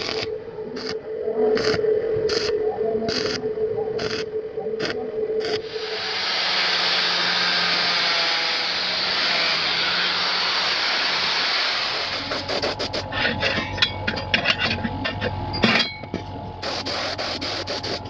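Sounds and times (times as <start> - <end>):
power sander running: 5.7 - 12.3
short scrapes and clicks: 11.9 - 13.5.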